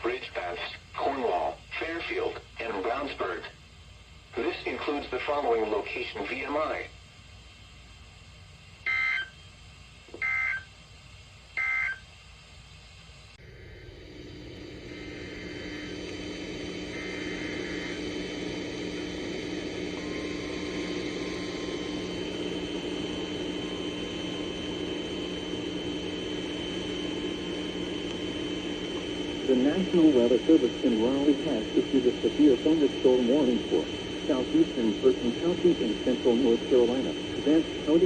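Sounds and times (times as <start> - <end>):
radio static hiss: 0.0 - 10.6, 12.8 - 38.0
faint high whine: 0.0 - 38.0
low steady hum: 0.0 - 38.0.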